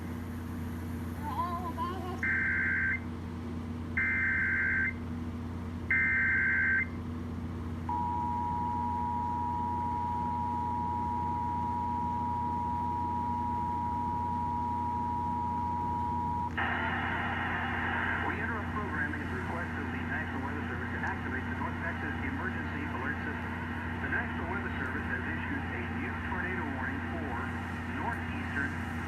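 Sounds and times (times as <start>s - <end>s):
two-tone attention signal: 7.9s - 16.5s.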